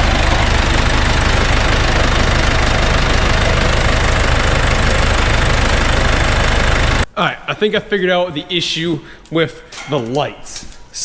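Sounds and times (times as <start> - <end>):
diesel engine idling: 0.0 - 7.1.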